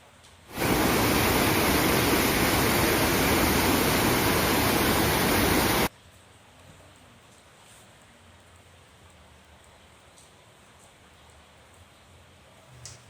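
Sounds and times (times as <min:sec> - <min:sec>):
loud steady rushing noise: 0:00.5 - 0:05.9.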